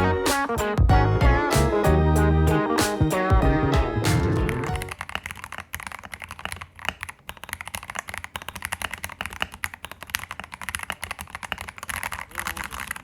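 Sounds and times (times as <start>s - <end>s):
mechanical keyboard typing: 4.5s - 13.0s.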